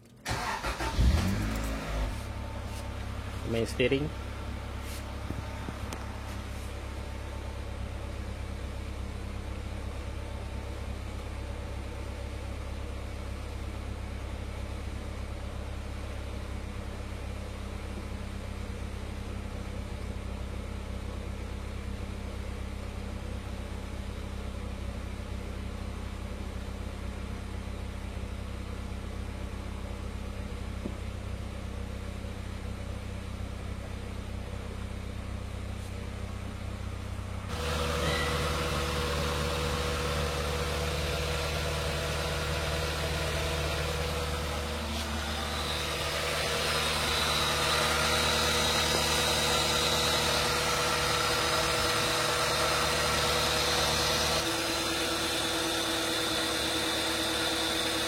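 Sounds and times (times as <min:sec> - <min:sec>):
power-steering pump running: 0:00.0 - 0:20.2, 0:35.6 - 0:58.0
car engine idling: 0:00.0 - 0:58.0.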